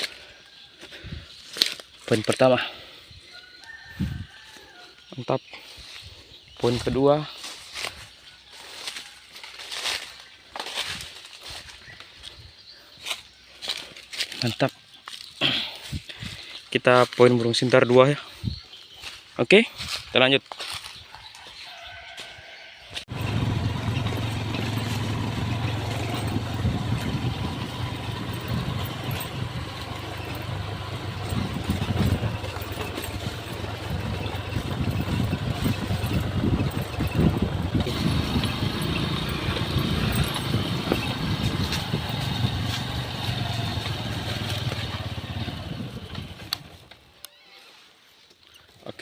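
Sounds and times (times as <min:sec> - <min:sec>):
motorcycle engine running: 0:23.1 - 0:46.9.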